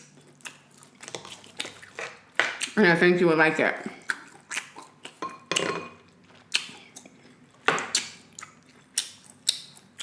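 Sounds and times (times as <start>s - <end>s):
cutlery clinking against dishes: 5.2s - 6.0s.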